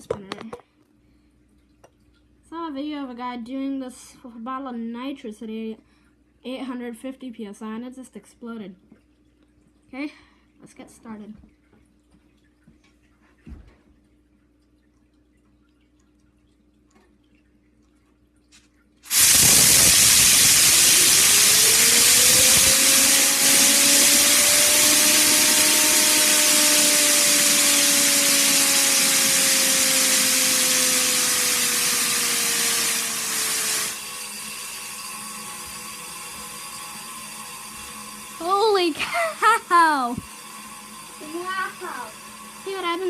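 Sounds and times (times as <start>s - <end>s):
compressed air hissing: 19.1s - 34.1s
fidget spinner whine: 19.1s - 43.0s.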